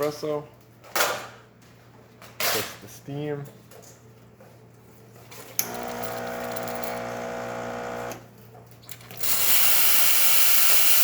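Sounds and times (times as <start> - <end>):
espresso machine buzzing hum: 5.6 - 8.3, 9.2 - 11.0
steam wand hissing: 9.2 - 11.0.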